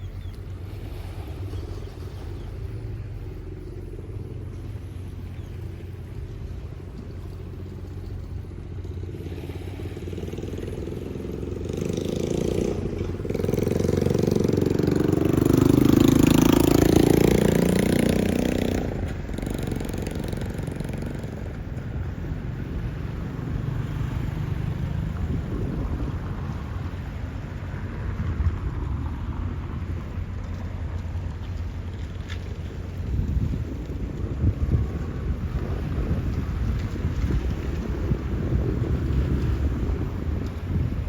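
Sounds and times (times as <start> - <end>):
vehicle engine passing by: 7.5 - 32.0.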